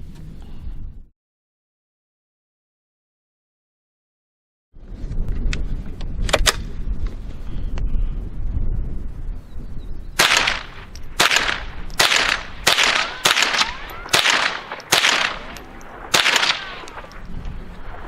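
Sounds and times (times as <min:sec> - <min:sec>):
rifle shots: 0:10.2 - 0:17.2.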